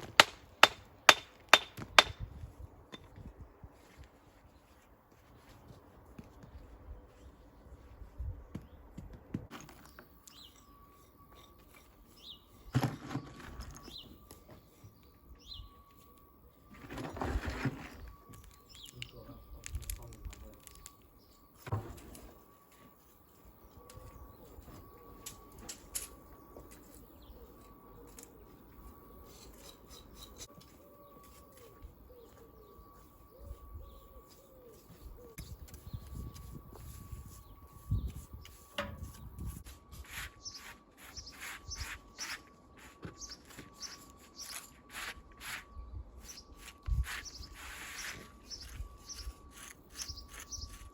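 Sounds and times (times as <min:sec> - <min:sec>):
faint outdoor background: 0:00.0 - 0:50.9
bird chirping: 0:09.8 - 0:16.7, 0:17.9 - 0:21.7, 0:26.2 - 0:39.5, 0:40.3 - 0:44.9, 0:45.6 - 0:50.9.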